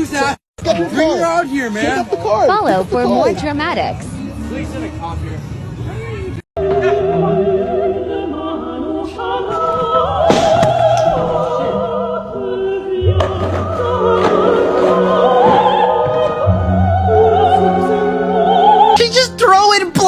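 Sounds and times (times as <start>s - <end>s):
opera singing with vibrato: 6.6s - 19.0s.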